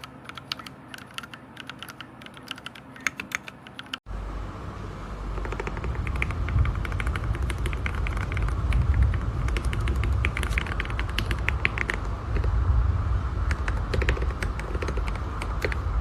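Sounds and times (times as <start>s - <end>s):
mechanical keyboard typing: 0.0s - 4.0s, 5.4s - 12.5s, 13.5s - 15.8s
steady low rumble: 4.1s - 16.0s.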